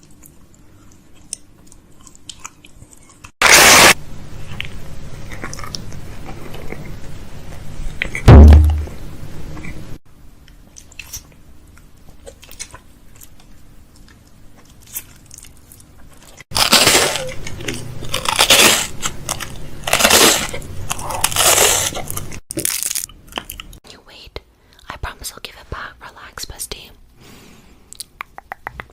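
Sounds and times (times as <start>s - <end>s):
crunchy chewing sounds: 0.0s - 3.6s, 4.4s - 8.3s, 10.5s - 23.8s
mouth clicks: 27.9s - 28.9s.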